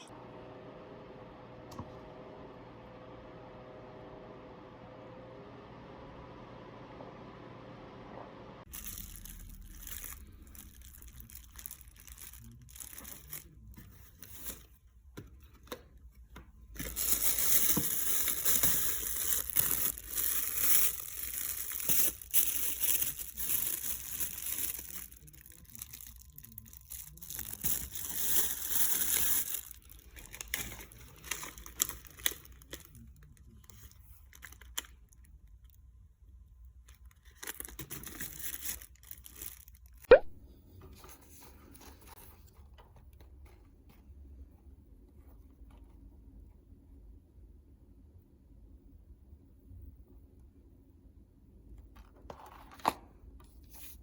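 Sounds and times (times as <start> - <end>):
rustling crinkling handling noise: 8.7 - 35.8, 36.7 - 40.1, 40.8 - 44.1.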